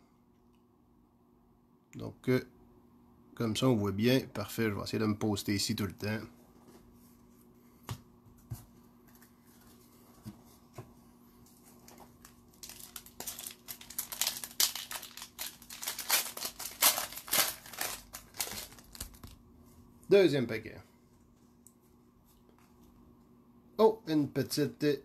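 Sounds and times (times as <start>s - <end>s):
foil wrapper crinkling: 11.4s - 19.4s.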